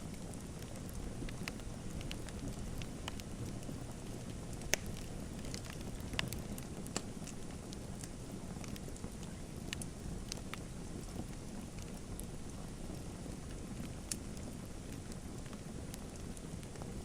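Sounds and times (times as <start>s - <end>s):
sharp pops of fire: 0.0s - 12.3s
wood fire crackling: 0.0s - 17.0s.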